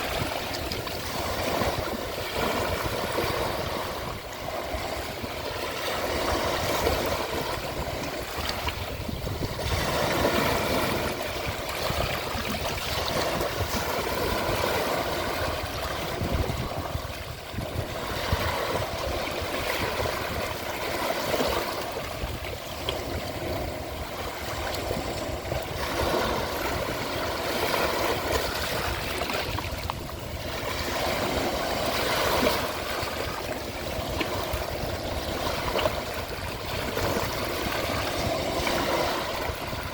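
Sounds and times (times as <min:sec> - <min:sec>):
ocean waves on shore: 0:00.0 - 0:39.9.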